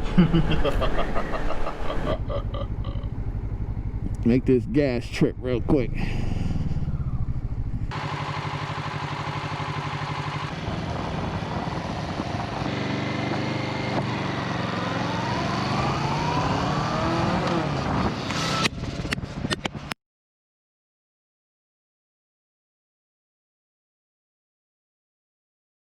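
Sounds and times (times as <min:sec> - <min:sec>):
motorcycle engine running: 0:00.4 - 0:19.9.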